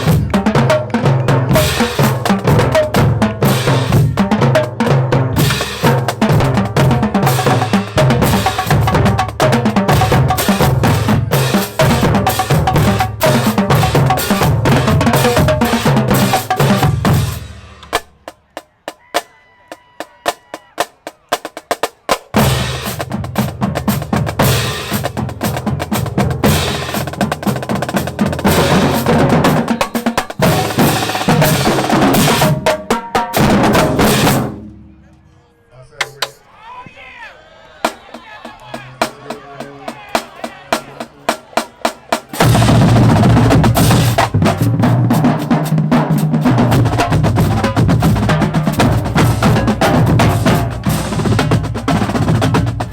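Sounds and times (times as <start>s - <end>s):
marching drumline cadence: 0.0s - 52.9s.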